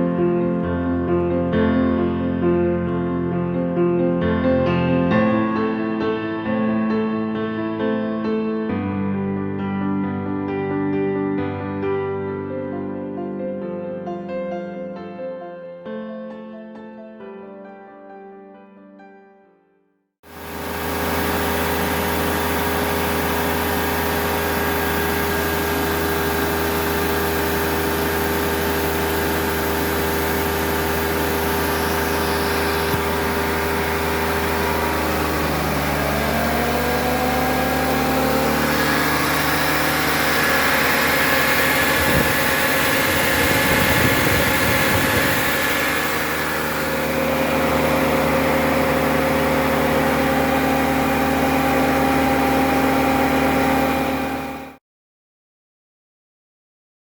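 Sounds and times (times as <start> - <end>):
car engine idling: 20.3 - 54.6
rising whine: 20.3 - 54.8.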